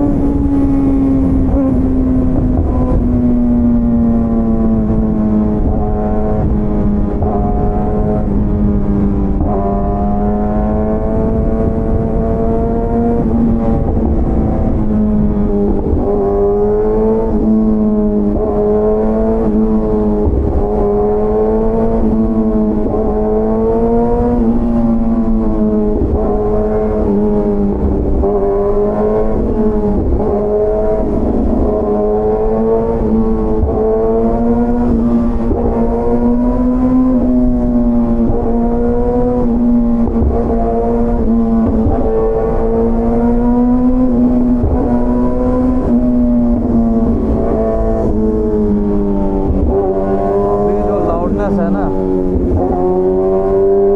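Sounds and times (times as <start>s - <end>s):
motorcycle engine cruising: 0.0s - 53.9s
wind and road noise: 0.0s - 53.9s.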